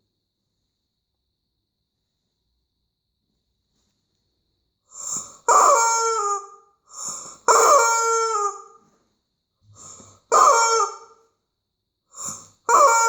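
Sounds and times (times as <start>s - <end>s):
wheeze of air from toy: 4.9s - 7.6s, 12.1s - 13.0s
squeaky dog toy squawking: 5.5s - 6.6s, 7.5s - 8.8s, 10.3s - 11.1s, 12.7s - 13.0s.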